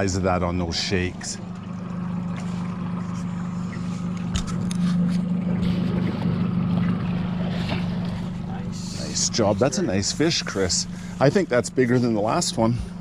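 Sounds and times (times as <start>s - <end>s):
boat motor humming: 0.0s - 13.0s.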